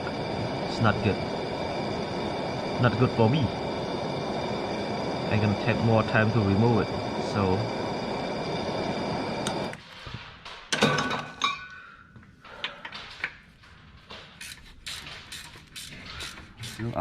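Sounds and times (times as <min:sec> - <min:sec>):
heating tool hissing: 0:00.0 - 0:09.8, 0:14.4 - 0:17.0.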